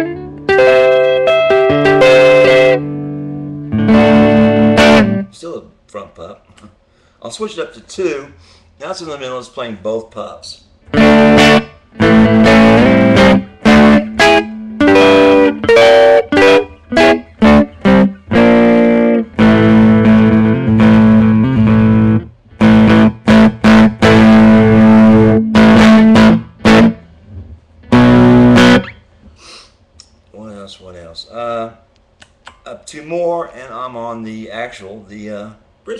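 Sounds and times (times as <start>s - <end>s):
electric guitar chords and notes: 0.0s - 5.3s, 10.9s - 29.0s.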